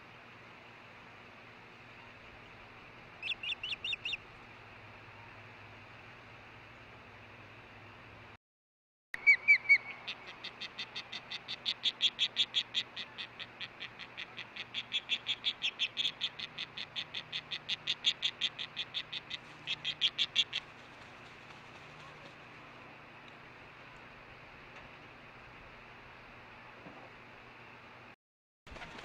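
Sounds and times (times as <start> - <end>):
osprey calling: 3.2 - 4.3, 9.2 - 20.8.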